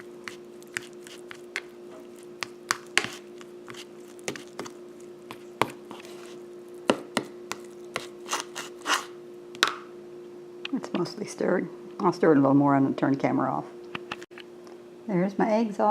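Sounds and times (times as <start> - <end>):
utensil scraping against bowl: 0.0 - 9.2
steady low hum: 0.0 - 15.9.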